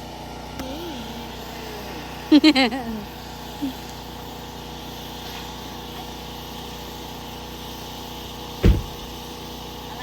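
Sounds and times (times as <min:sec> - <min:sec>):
small engine running: 0:00.0 - 0:10.0
loud low thump: 0:08.6 - 0:09.1.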